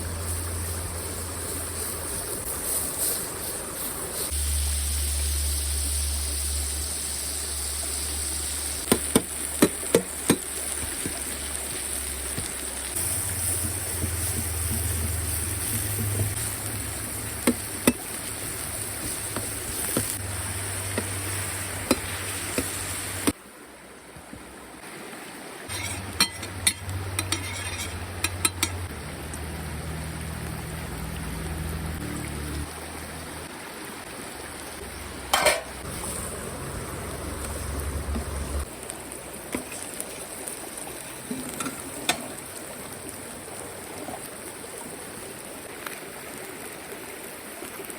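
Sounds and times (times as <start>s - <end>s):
cooking utensils clinking: 25.7s - 28.9s, 35.3s - 35.8s, 41.3s - 42.3s.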